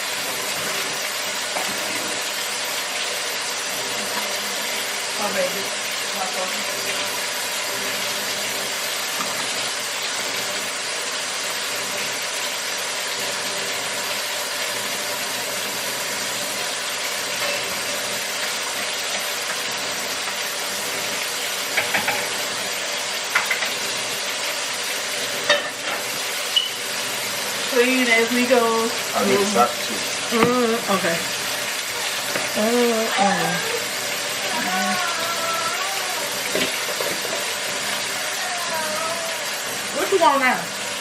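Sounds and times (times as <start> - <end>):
food sizzling in a pan: 0.0 - 41.0.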